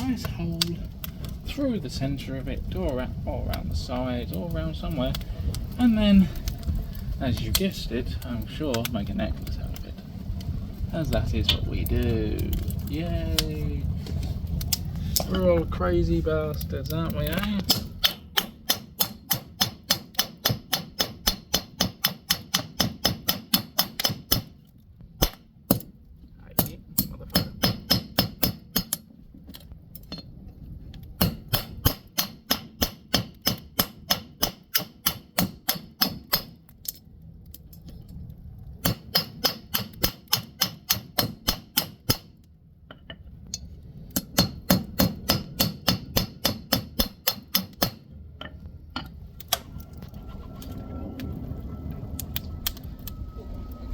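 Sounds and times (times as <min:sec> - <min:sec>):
hammer striking metal on anvil: 0:27.0 - 0:29.0, 0:31.2 - 0:36.6, 0:38.8 - 0:42.2, 0:44.2 - 0:48.0.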